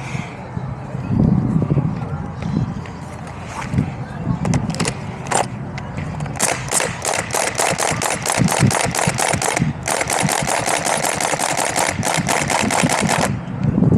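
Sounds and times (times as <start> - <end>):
airsoft gun firing bursts: 6.4 - 13.4.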